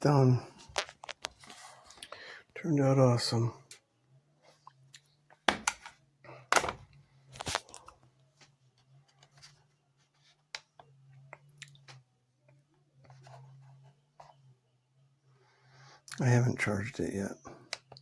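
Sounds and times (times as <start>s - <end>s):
knocks and crinkles of handling: 0.5s - 2.2s, 4.4s - 14.5s.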